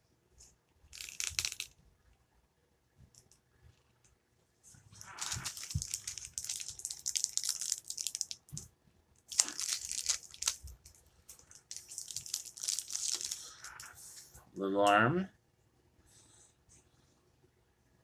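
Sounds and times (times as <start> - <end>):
plastic packaging crinkling: 1.0 - 1.7, 5.0 - 8.7, 9.3 - 14.0.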